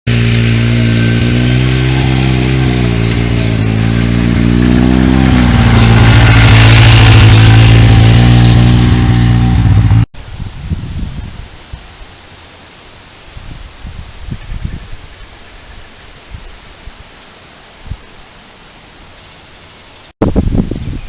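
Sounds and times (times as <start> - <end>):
engine running: 0.1 - 10.1
faint rustle of leaves: 10.2 - 21.0.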